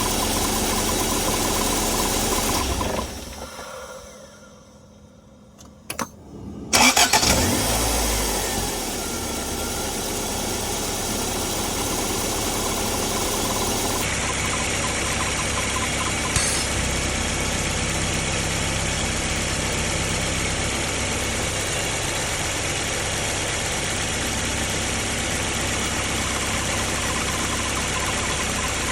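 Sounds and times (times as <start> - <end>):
car engine starting and idling: 0.0 - 28.9
engine squeal: 6.7 - 10.7, 11.4 - 17.0, 26.1 - 28.9
clicks: 14.3 - 16.8.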